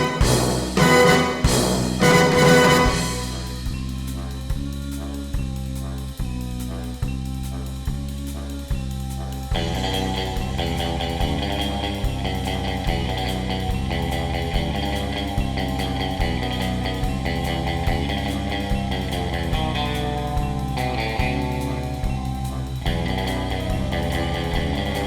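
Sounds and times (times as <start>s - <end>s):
rock band music: 0.0s - 4.3s, 9.6s - 25.0s.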